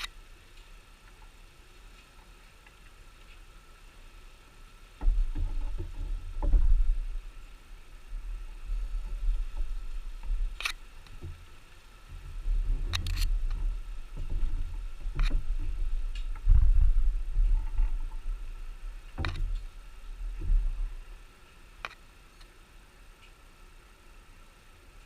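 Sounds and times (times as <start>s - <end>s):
low handling rumble: 4.9s - 21.8s
sharp clicks and knocks: 5.0s - 7.3s, 12.1s - 18.3s, 19.0s - 21.0s.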